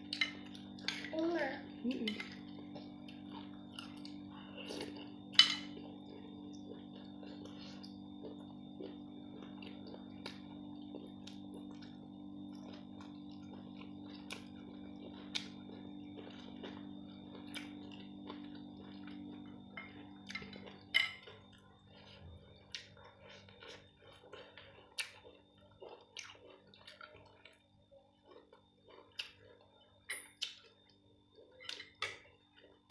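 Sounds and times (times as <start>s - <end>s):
spoon clinking against plate: 5.4s - 5.7s.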